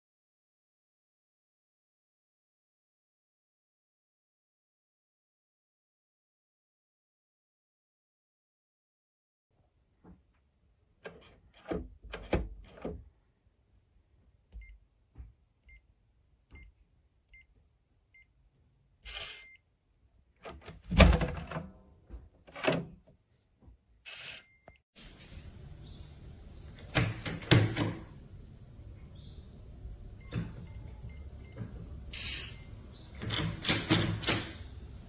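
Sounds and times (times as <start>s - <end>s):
lock and door clunks: 11.0s - 13.0s, 20.4s - 21.7s, 22.5s - 23.0s, 26.7s - 28.2s, 32.9s - 34.8s
door lock clicks and knocks: 11.1s - 13.0s, 20.4s - 21.7s, 26.8s - 28.1s
keypad beeps: 14.6s - 14.8s, 19.3s - 19.6s, 24.4s - 24.8s, 30.2s - 31.6s.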